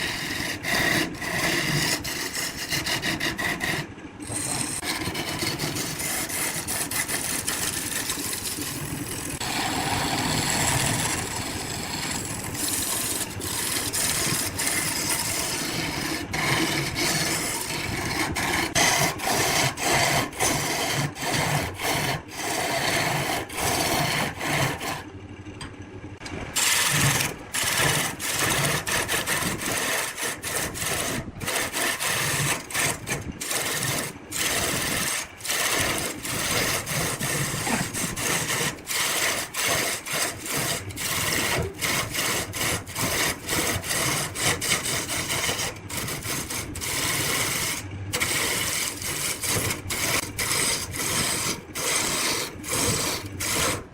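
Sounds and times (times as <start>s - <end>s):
tool rasping wood: 0.0s - 25.1s, 26.6s - 53.9s.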